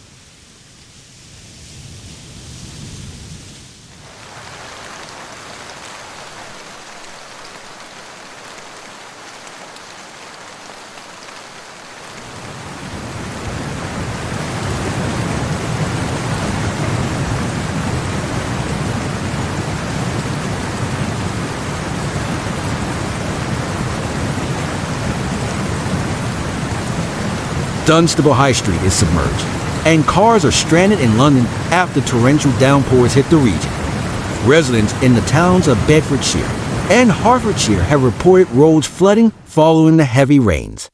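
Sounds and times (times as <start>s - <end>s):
heavy rain hissing: 0.0s - 39.0s
deep rushing: 12.3s - 37.6s.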